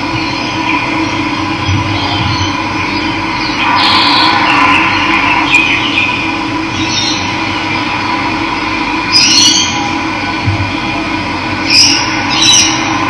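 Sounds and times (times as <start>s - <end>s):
birds calling: 0.2s - 7.8s, 11.6s - 13.0s.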